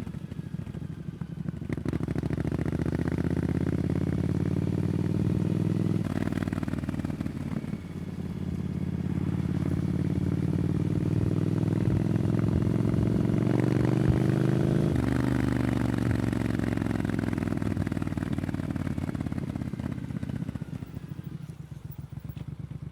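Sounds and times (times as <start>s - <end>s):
motorcycle engine accelerating: 0.0s - 22.9s.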